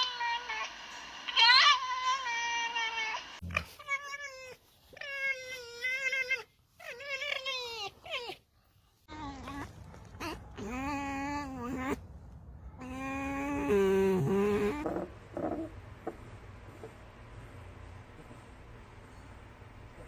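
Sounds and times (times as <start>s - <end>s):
fox wavering cries: 1.4s - 8.4s, 9.1s - 12.0s, 12.8s - 15.7s.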